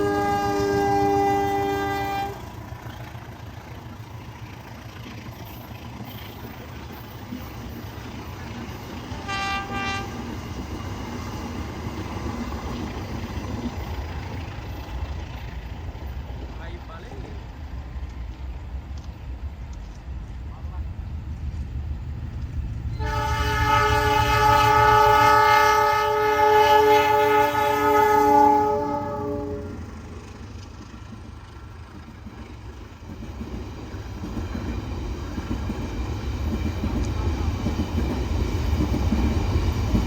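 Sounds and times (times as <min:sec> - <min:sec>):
locomotive air horn blast: 0:00.0 - 0:02.6, 0:09.2 - 0:10.3, 0:23.0 - 0:30.1
train rumbling: 0:00.0 - 0:40.0.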